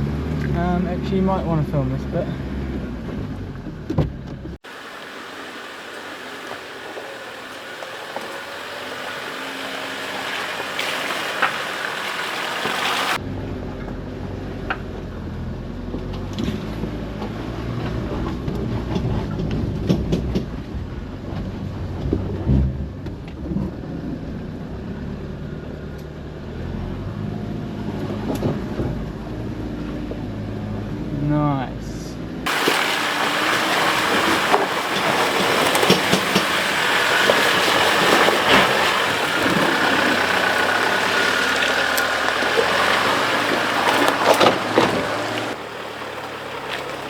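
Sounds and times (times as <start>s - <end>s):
suspension clunks and rattles: 2.6s - 4.6s, 15.8s - 24.2s, 27.9s - 29.3s, 32.5s - 47.0s
vehicle engine running slowly: 32.5s - 47.0s.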